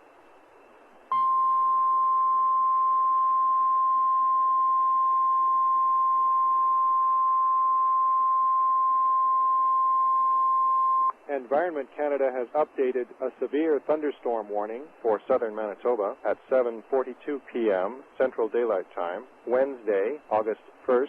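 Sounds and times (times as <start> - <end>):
faint radio hiss: 0.0 - 21.0
high-pitched alarm tone: 1.1 - 11.1.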